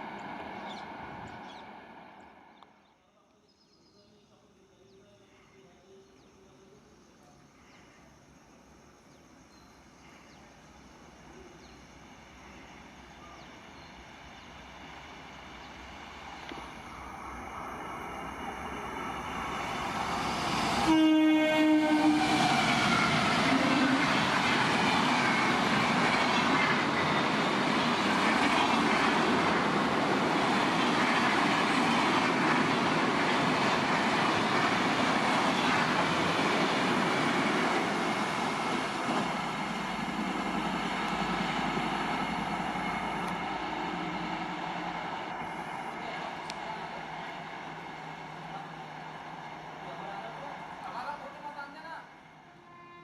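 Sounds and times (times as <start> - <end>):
train wheels rushing on rails: 10.4 - 51.8
train horn blast: 20.8 - 22.4.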